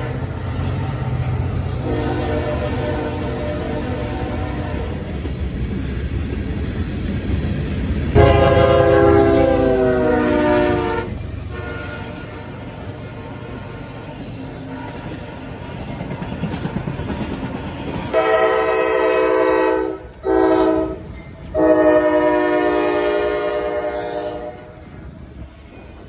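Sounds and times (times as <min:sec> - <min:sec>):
train rumbling on rails: 0:00.0 - 0:26.0
locomotive air horn blasts: 0:01.8 - 0:05.1, 0:08.2 - 0:14.0, 0:18.1 - 0:24.9.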